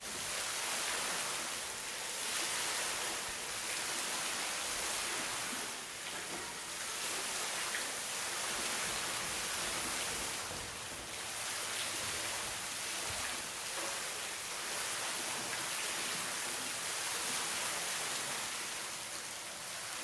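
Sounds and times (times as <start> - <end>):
water rushing: 0.0 - 20.0.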